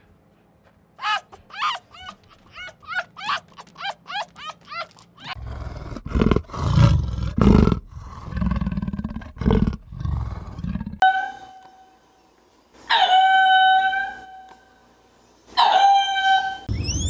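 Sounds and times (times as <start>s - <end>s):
large animal growling and roaring: 5.4s - 11.0s
steady high-pitched call: 16.2s - 17.0s.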